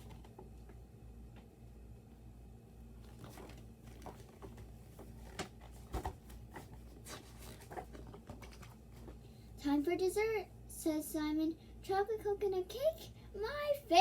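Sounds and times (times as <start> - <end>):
paper rustling: 3.0 - 9.2
book thump: 3.2 - 6.7.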